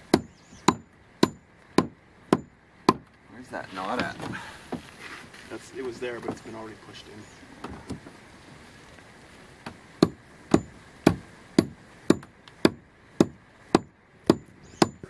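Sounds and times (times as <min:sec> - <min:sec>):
tool striking wood: 0:00.0 - 0:03.1, 0:09.6 - 0:15.0.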